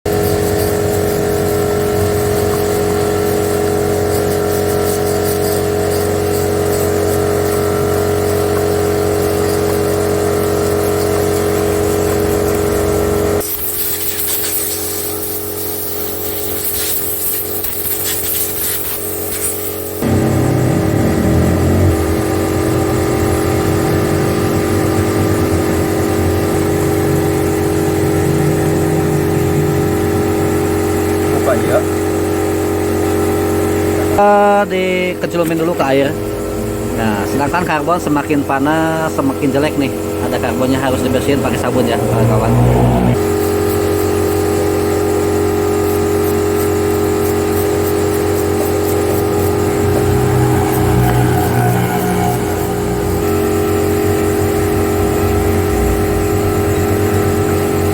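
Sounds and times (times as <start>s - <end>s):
high hiss: 13.4s - 20.6s
car engine idling: 20.0s - 43.4s, 46.6s - 57.9s.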